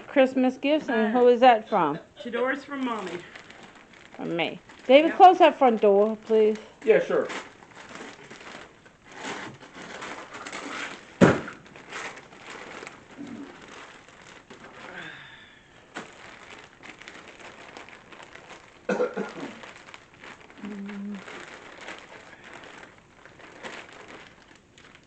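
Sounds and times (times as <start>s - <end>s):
person speaking: 0.0s - 3.4s, 20.6s - 21.2s
wrapping paper crinkling: 2.3s - 25.0s
sharp knock: 11.2s - 11.6s.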